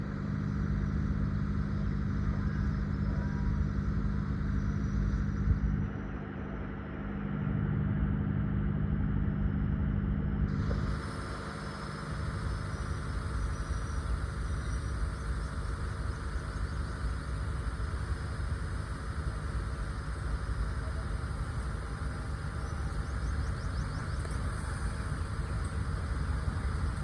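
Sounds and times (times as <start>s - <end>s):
truck engine running: 10.4s - 27.0s.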